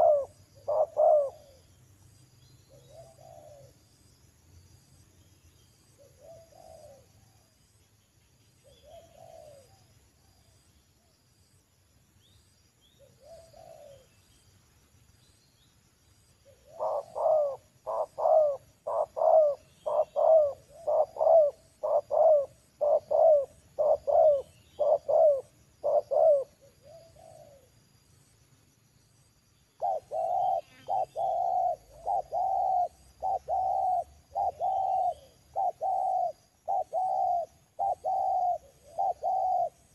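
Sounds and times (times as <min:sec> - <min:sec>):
doves cooing: 0:00.0 - 0:01.6, 0:02.7 - 0:03.8, 0:06.0 - 0:07.4, 0:08.7 - 0:09.9, 0:13.1 - 0:14.1, 0:16.4 - 0:27.8, 0:29.8 - 0:39.9.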